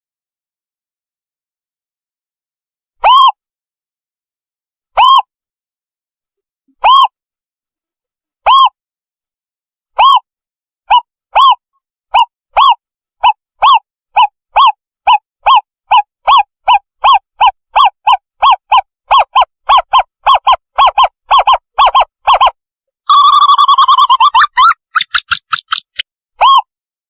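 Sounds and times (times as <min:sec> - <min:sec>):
whistled owl hoots: 0:05.0 - 0:05.3, 0:06.8 - 0:07.2, 0:08.5 - 0:08.8, 0:10.0 - 0:10.3, 0:10.9 - 0:26.7
fast chattering trill: 0:15.5 - 0:26.0.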